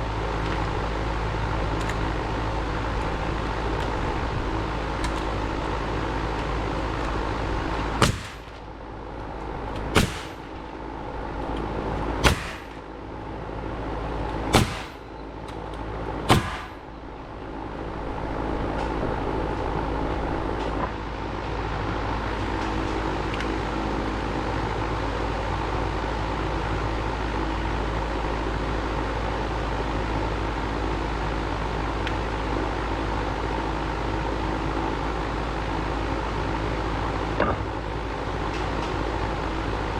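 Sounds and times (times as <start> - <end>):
steady machine hum: 0.0 - 39.9
nails being driven: 8.0 - 8.6, 9.7 - 10.6, 12.2 - 12.8, 14.5 - 15.0, 16.3 - 16.8.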